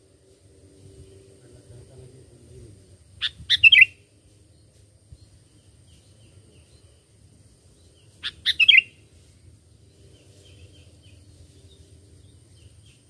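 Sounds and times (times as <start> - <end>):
faint low hum: 0.0 - 13.0.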